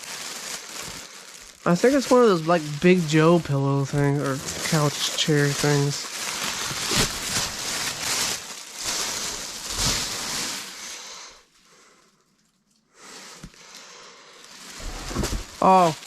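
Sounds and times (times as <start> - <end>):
packaging rustling and crinkling: 0.0 - 11.1, 14.4 - 16.0.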